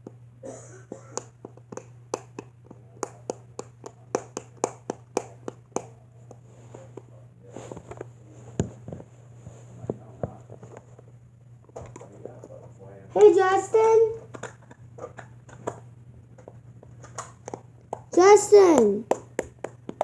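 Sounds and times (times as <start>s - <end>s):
low electrical hum: 0.0s - 20.0s
sharp clicks and taps: 1.2s - 5.9s, 18.7s - 20.0s.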